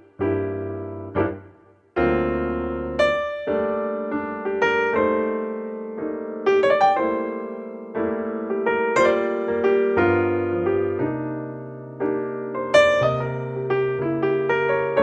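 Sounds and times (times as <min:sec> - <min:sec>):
piano music: 0:00.0 - 0:15.0.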